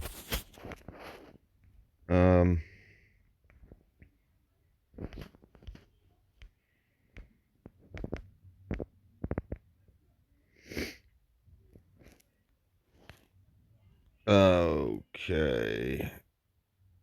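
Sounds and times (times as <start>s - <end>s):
breathy sniff: 10.5s - 11.1s.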